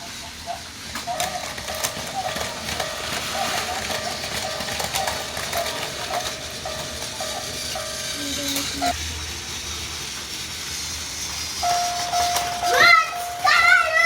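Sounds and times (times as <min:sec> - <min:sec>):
toy trains rattling on track: 0:00.0 - 0:14.0
toy crossing bell ringing: 0:00.6 - 0:09.0, 0:11.6 - 0:14.0.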